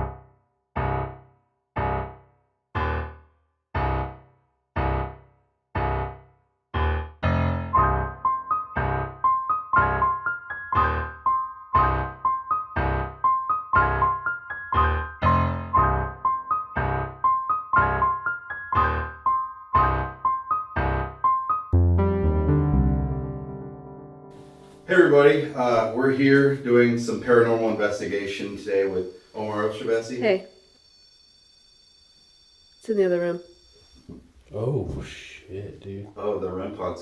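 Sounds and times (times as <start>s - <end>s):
higher repeating piano melody: 0.0s - 0.2s, 0.8s - 30.4s
low electric piano chords: 6.8s - 27.7s.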